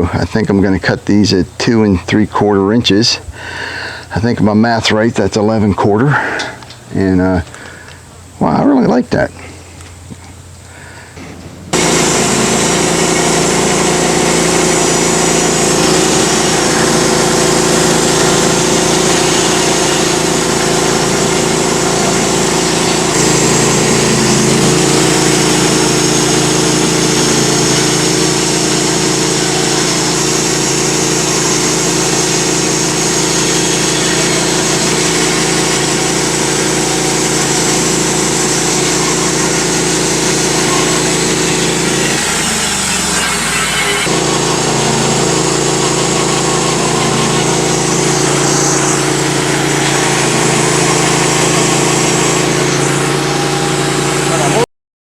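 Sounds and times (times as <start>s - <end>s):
gas engine running: 0.0s - 54.7s
band saw blade cutting log: 11.2s - 54.6s.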